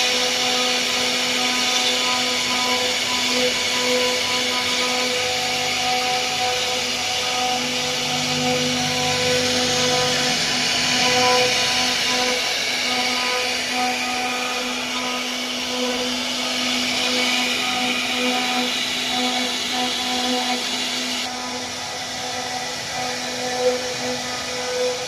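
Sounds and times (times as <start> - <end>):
router spindle whine: 0.0 - 25.0.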